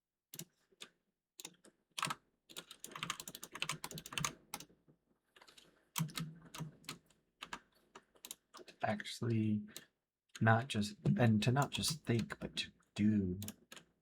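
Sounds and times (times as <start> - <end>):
computer keyboard clicking: 0.4 - 4.7, 5.4 - 8.8, 11.5 - 12.5, 13.4 - 13.9.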